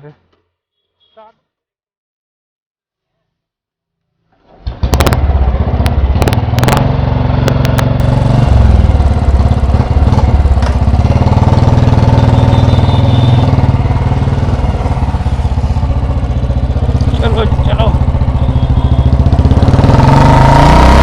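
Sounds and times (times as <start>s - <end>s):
motorcycle engine thumping: 4.6s - 20.0s.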